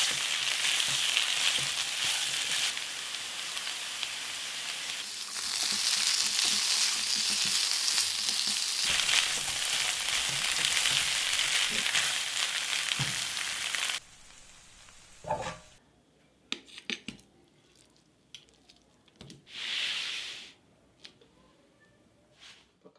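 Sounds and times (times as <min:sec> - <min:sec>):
chicken sizzling in hot oil: 0:00.0 - 0:15.1.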